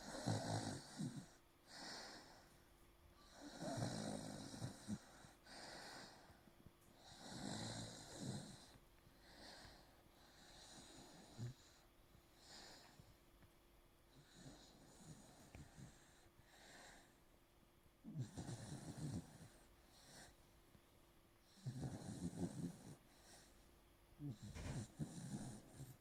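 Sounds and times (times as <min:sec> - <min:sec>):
pet snoring: 0:00.0 - 0:02.4, 0:03.2 - 0:06.3, 0:07.0 - 0:11.8, 0:14.1 - 0:17.0, 0:18.0 - 0:20.3, 0:21.4 - 0:23.5, 0:24.2 - 0:26.0
quiet breaths: 0:00.0 - 0:26.0
short snort: 0:24.3 - 0:26.0.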